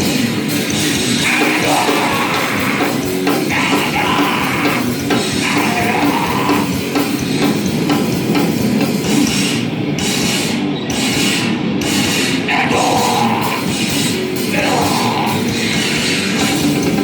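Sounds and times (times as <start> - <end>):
band playing distorted music: 0.0 - 17.0.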